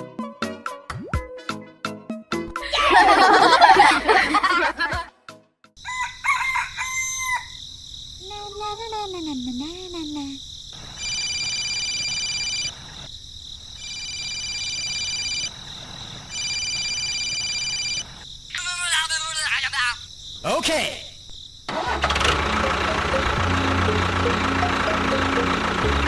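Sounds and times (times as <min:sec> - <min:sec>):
rooster crowing: 0:05.8 - 0:07.6
rooster chirping calls: 0:05.8 - 0:07.7.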